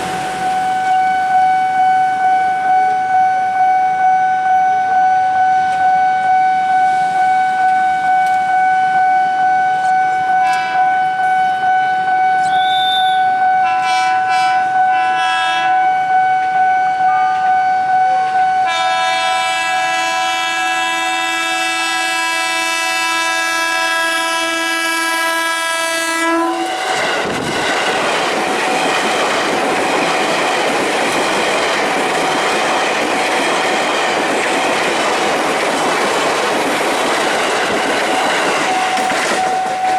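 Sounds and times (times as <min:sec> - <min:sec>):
level crossing signal ringing: 0:00.0 - 0:19.1
long train horn blast: 0:07.9 - 0:27.2
train wheels clattering on rails: 0:26.6 - 0:39.9.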